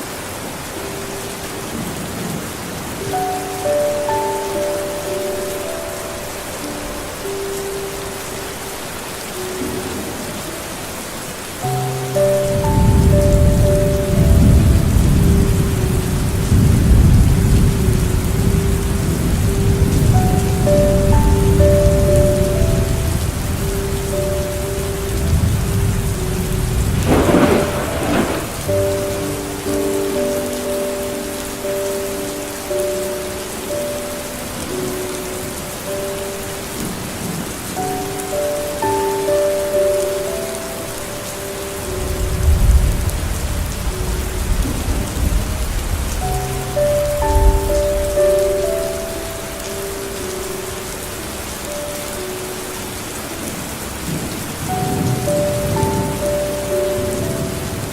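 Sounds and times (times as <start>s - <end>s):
soft slow background music: 0.0s - 57.9s
steady rain: 0.0s - 57.9s
low rolling thunder: 12.5s - 29.6s.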